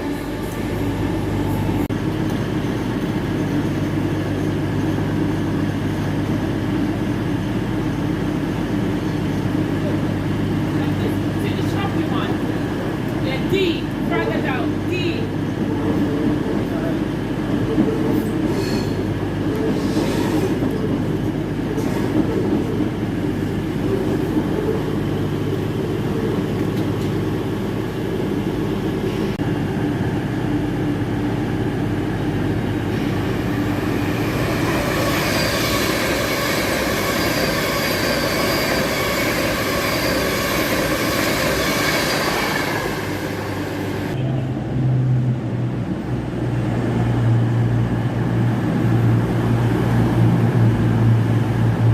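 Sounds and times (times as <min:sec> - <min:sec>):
train rumbling: 0:00.0 - 0:51.9
train wheels squealing on rails: 0:17.6 - 0:21.1, 0:33.5 - 0:44.2.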